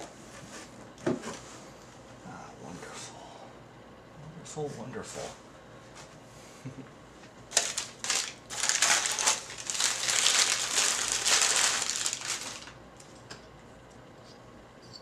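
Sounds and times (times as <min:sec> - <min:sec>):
plastic packing crinkling: 0:07.5 - 0:12.8.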